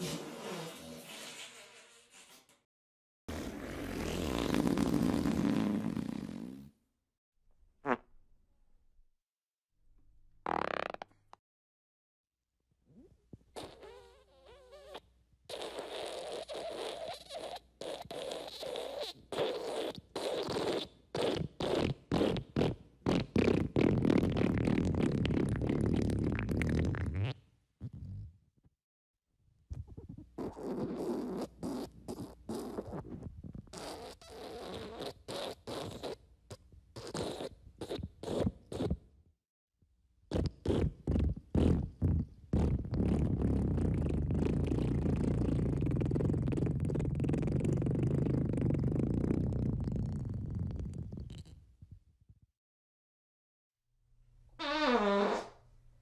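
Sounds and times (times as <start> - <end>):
fart sound effects: 0.0 - 1.5, 3.3 - 6.8, 7.8 - 8.1, 10.4 - 11.2, 13.0 - 28.3, 29.8 - 36.2, 40.3 - 51.6, 54.6 - 55.6.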